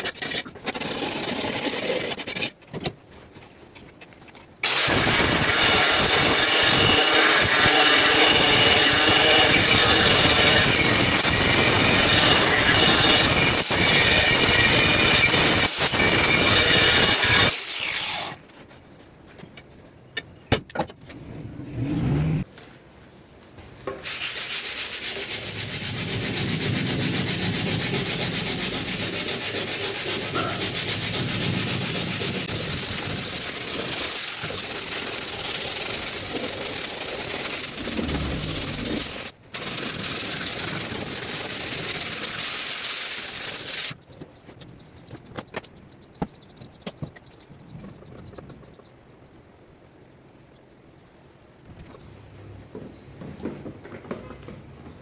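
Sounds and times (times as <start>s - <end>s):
power tool sanding metal: 4.6s - 18.4s, 24.4s - 44.0s.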